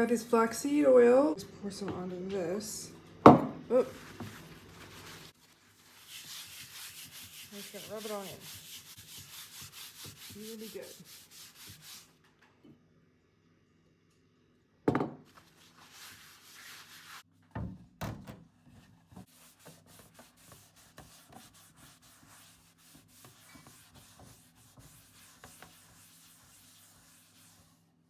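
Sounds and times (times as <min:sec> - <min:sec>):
sharp knock on wood: 0:03.3 - 0:03.6
scratchy rubbing on wood: 0:03.9 - 0:12.1, 0:15.6 - 0:17.2, 0:19.3 - 0:27.8.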